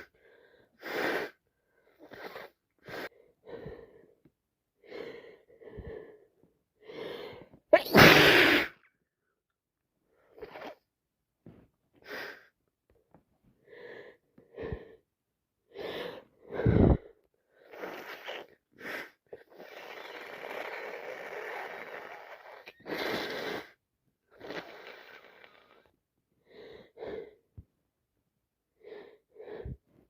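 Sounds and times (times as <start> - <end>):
wheezy breaths: 0.0 - 4.2
woman sneezing: 7.8 - 8.7.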